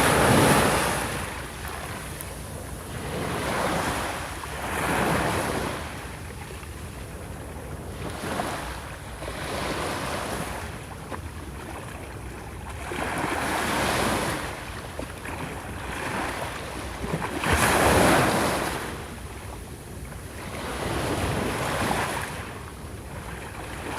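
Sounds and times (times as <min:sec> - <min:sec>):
surf breaking on sandy beach: 0:00.0 - 0:02.0.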